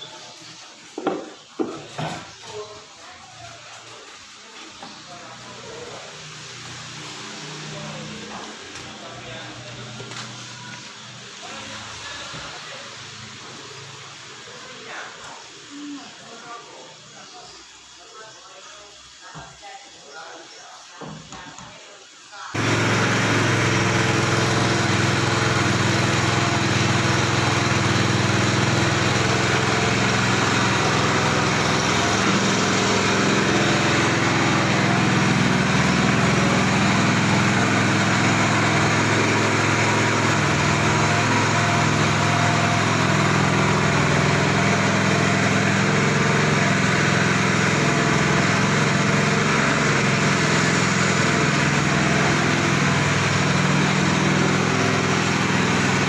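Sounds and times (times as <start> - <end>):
small engine running: 5.0 - 16.6, 22.5 - 56.0.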